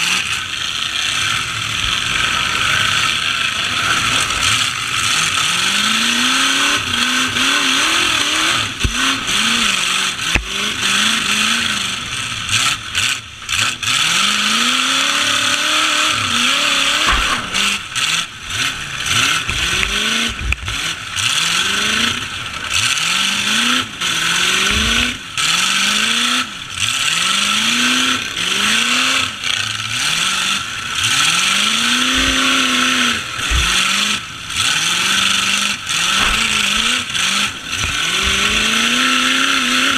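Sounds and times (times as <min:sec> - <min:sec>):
truck engines revving: 0:00.0 - 0:39.9
thumps: 0:16.9 - 0:18.8, 0:32.0 - 0:35.3, 0:36.0 - 0:39.5.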